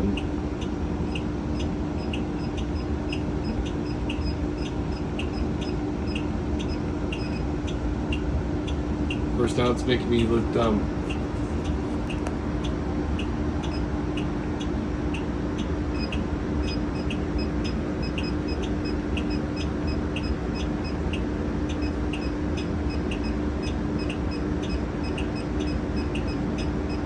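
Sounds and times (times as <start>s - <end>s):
regular ticking: 0.1s - 14.3s.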